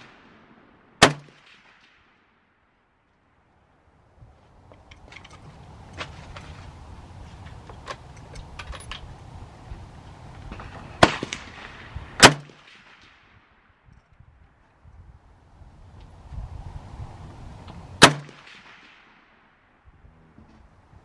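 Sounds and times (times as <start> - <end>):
loud rifle shots: 0.0 - 2.4, 11.0 - 13.4, 18.0 - 19.4.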